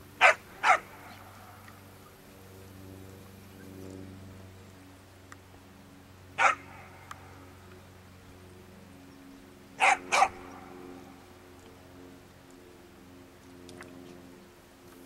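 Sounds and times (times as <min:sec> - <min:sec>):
steady low hum: 0:00.0 - 0:15.0
dog barking: 0:00.2 - 0:01.2, 0:06.4 - 0:06.8, 0:09.8 - 0:10.5.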